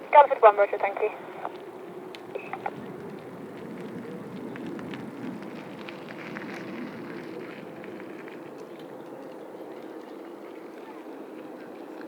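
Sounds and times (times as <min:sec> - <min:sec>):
distant jet engine rumble: 0:00.0 - 0:08.7.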